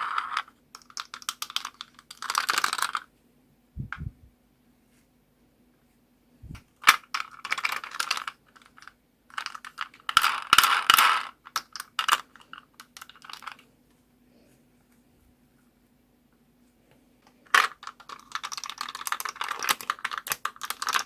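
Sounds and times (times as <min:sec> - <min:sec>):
plastic beads clicking and rattling: 0:00.0 - 0:03.1, 0:06.8 - 0:13.6, 0:17.4 - 0:21.0.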